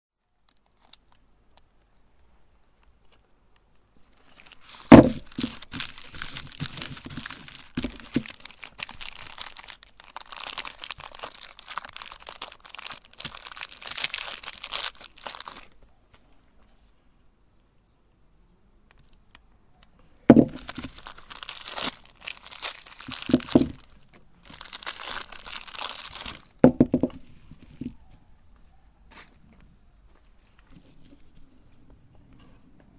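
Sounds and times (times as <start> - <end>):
meat grinder crunching soap: 4.3 - 15.7, 20.4 - 23.8.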